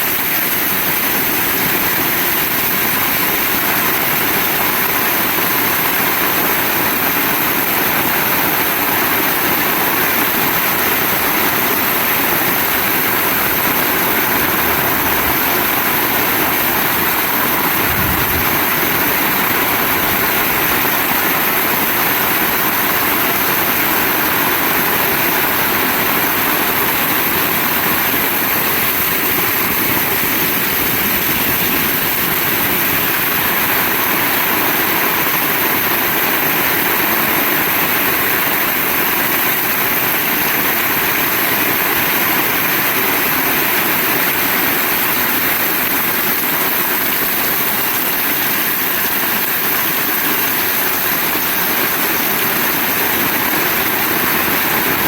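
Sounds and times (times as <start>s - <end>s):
heavy rain: 0.0s - 55.0s.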